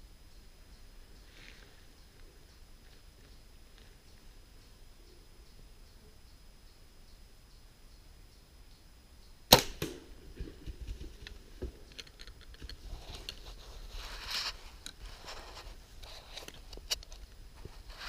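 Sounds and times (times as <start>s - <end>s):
bow shot crack: 9.5s - 11.9s
rustling and scuffling: 10.2s - 18.0s.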